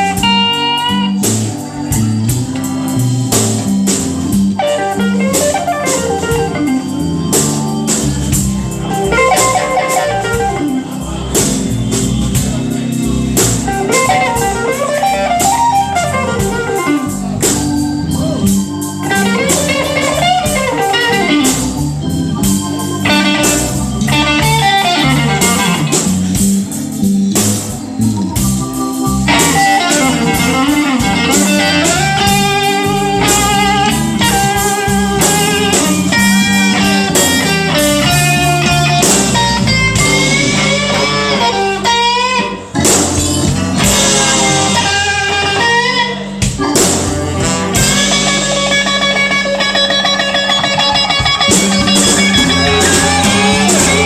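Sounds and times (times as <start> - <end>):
electric guitar solo with bends: 0.0 - 3.3, 4.4 - 7.8, 8.4 - 11.2, 13.7 - 27.1, 27.7 - 54.0
electric blues band playing: 0.0 - 54.0.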